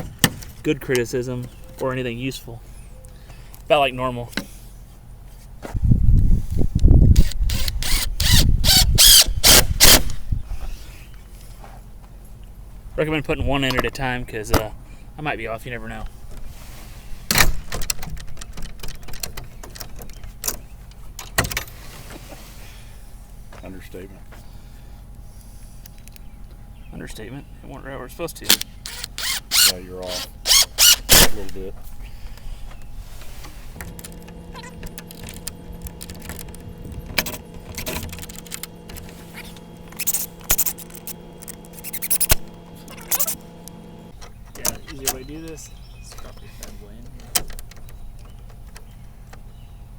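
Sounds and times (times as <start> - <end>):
low mechanical hum: 0.0 - 49.9
power drill driving a screw: 7.2 - 10.2, 28.8 - 31.4, 37.2 - 43.8
lock hardware clinking and rattling: 17.3 - 21.8, 33.8 - 43.4, 44.2 - 49.5
sharp lock clicks: 28.4 - 31.6, 33.8 - 45.3, 47.2 - 48.9.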